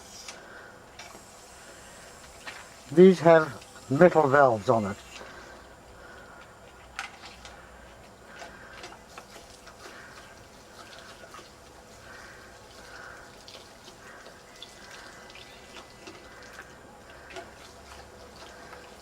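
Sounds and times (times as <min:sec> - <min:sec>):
dog drinking: 0:08.3 - 0:19.0
water running and splashing: 0:08.6 - 0:19.0.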